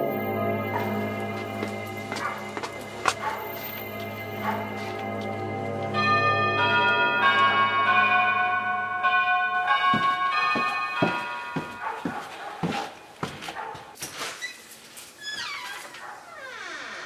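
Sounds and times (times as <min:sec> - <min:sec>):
bell-like chime melody: 0:00.0 - 0:12.0.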